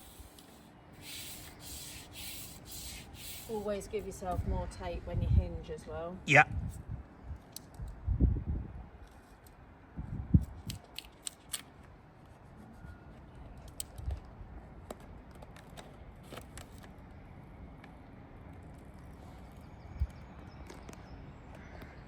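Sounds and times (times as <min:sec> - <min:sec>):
tape clicks and snips: 0:10.4 - 0:11.7.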